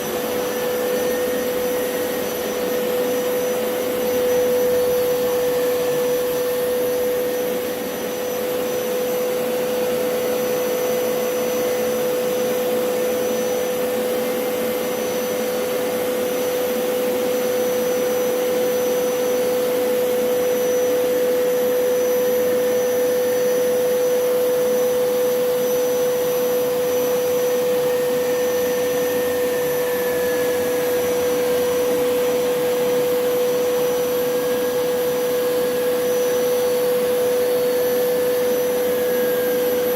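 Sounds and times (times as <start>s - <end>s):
carpet cleaner running: 0.0s - 39.9s.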